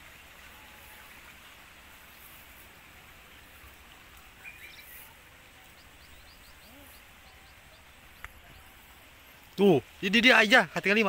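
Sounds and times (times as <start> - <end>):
steady hiss of insects or water: 0.0 - 11.0
small birds chirping: 1.4 - 10.2.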